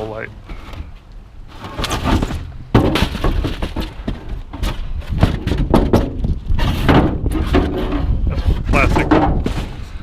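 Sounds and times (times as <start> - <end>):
junk knocking and clattering: 1.6 - 9.8.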